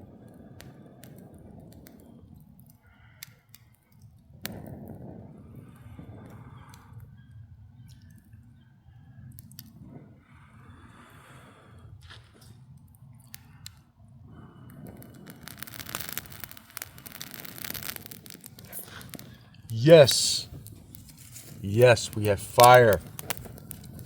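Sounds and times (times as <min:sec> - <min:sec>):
stick fire crackling: 0:14.6 - 0:24.0
snaps and rustling: 0:15.1 - 0:19.4, 0:20.3 - 0:24.0.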